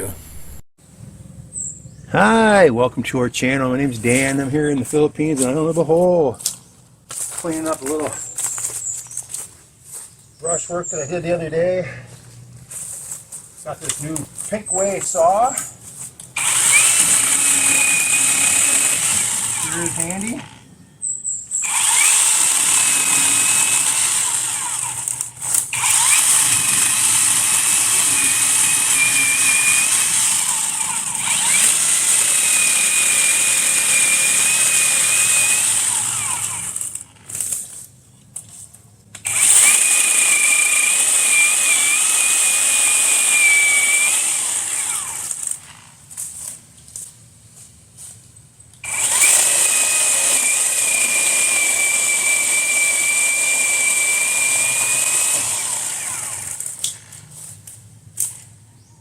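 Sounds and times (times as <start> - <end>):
electric chainsaw cutting brush: 16.3 - 20.6, 21.6 - 37.8, 39.2 - 46.6, 48.8 - 58.4.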